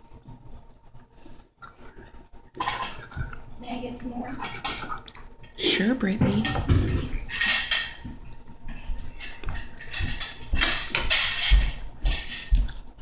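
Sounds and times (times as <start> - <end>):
plates and cutlery clattering: 2.6 - 3.4, 6.2 - 12.8.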